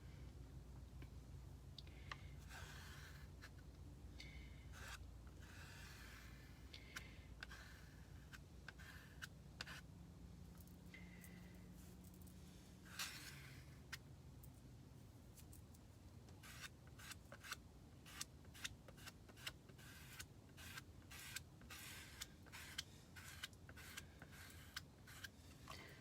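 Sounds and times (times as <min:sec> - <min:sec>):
squeegee scraping paste: 0:04.7 - 0:09.9, 0:12.8 - 0:14.0, 0:16.3 - 0:25.7.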